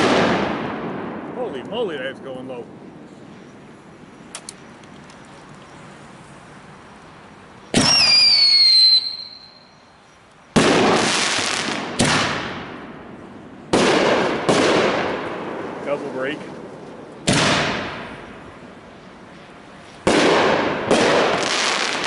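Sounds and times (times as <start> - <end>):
firework whistle falling in pitch: 7.8 - 9.8
firework shell bangs: 10.6 - 12.9, 17.2 - 18.2.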